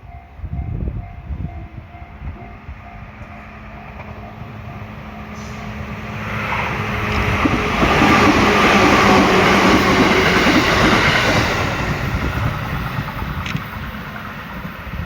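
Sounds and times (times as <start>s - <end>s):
electric train passing: 0.0s - 15.0s.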